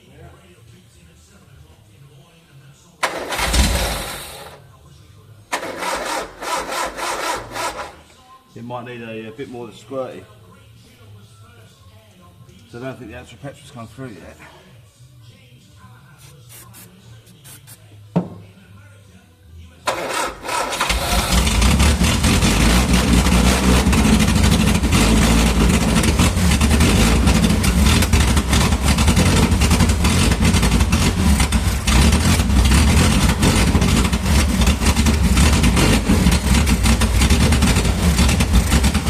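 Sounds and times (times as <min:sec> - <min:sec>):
car engine cranking and running: 0:03.0 - 0:04.5, 0:05.5 - 0:08.1, 0:19.9 - 0:39.0.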